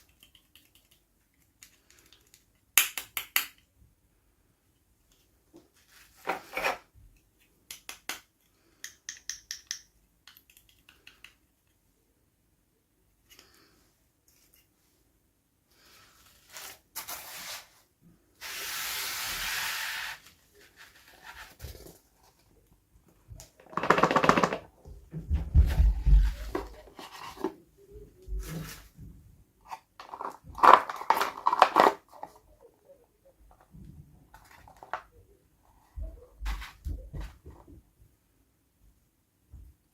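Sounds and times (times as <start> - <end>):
steady hiss: 15.7 - 21.0
toy packaging rustling and crackling: 23.5 - 24.7, 25.9 - 27.6, 29.6 - 32.5, 34.3 - 35.2.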